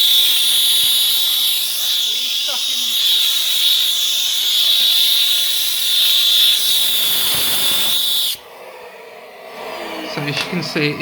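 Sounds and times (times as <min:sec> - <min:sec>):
vacuum cleaner high-pitched whistle: 0:00.0 - 0:08.4
rushing air hiss: 0:00.0 - 0:10.3.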